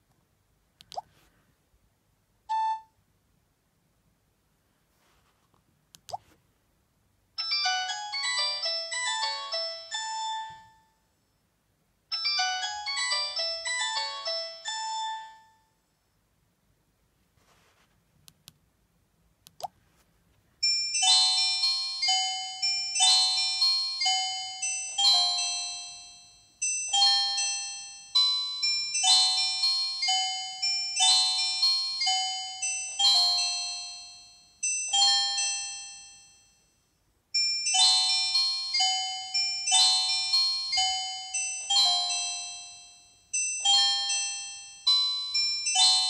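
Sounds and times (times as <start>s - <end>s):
bell-like ringtone melody: 7.4s - 11.0s, 12.1s - 15.8s, 20.6s - 46.0s.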